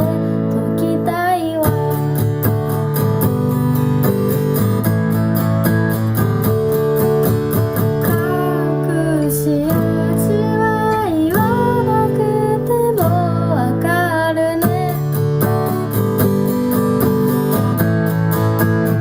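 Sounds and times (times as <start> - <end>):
person singing: 0.0 - 2.5, 8.0 - 15.6
acoustic guitar strumming: 0.0 - 19.0.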